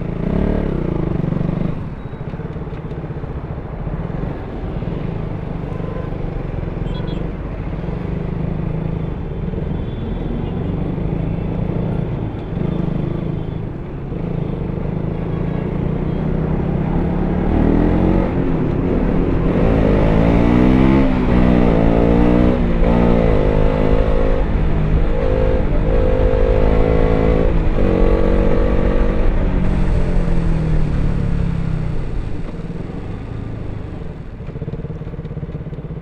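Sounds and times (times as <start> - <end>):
motorcycle engine accelerating: 16.1 - 36.0.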